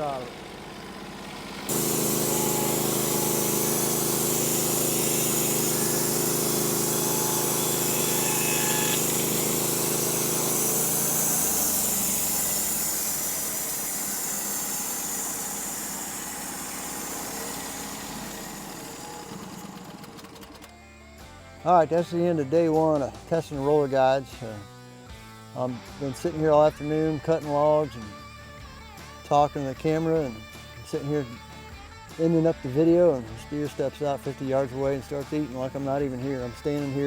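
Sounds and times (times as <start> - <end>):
sawmill engine running: 0.0 - 20.8, 32.2 - 37.0.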